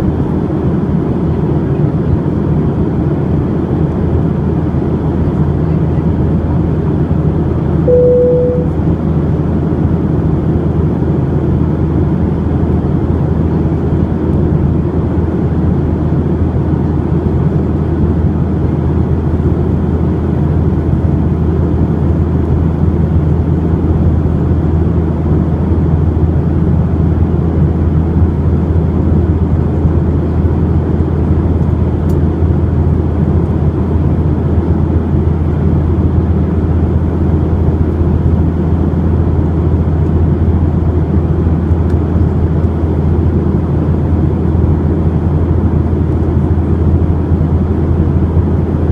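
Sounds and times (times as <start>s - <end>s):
airplane cabin drone: 0.0s - 48.9s
single tone: 7.9s - 9.0s.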